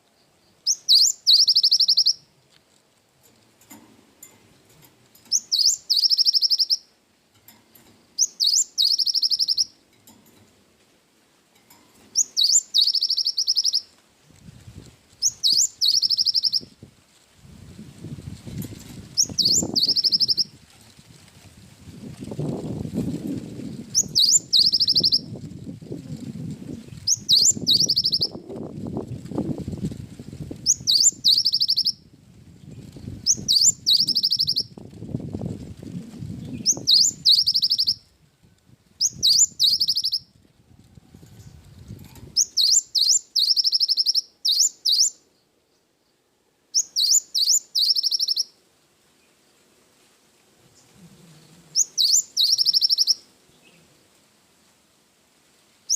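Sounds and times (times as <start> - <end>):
bird singing with trill: 0.6 - 2.2, 5.3 - 6.9, 8.2 - 9.8, 12.2 - 13.9, 15.2 - 16.7, 19.1 - 20.6, 23.9 - 25.4, 27.0 - 28.4, 30.6 - 32.0, 33.2 - 34.7, 36.5 - 38.0, 39.0 - 40.3, 42.4 - 45.2, 46.8 - 48.6, 51.7 - 53.8.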